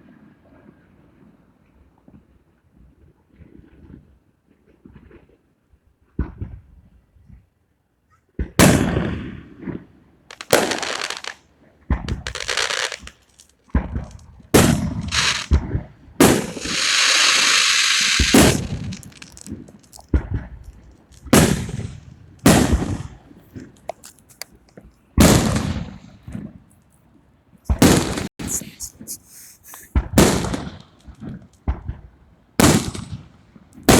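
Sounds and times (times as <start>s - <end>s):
sharp bangs: 10.3s - 11.4s, 12.1s - 13.4s, 14.0s - 15.6s, 16.2s - 20.0s
steady hiss: 10.3s - 11.4s, 12.1s - 15.6s, 16.3s - 20.1s, 27.7s - 30.6s.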